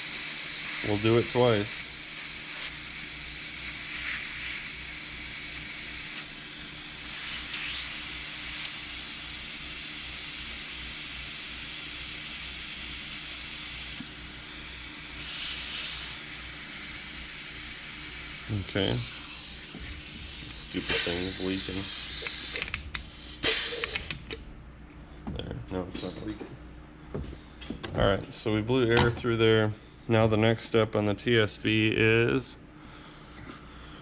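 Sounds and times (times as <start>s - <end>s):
compressed air hissing: 0.0s - 24.4s.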